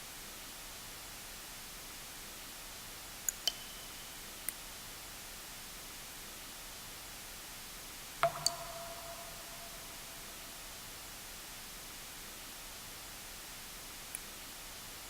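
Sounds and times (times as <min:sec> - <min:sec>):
white-noise hiss: 0:00.0 - 0:15.0
water drips: 0:03.2 - 0:05.0, 0:08.2 - 0:11.5.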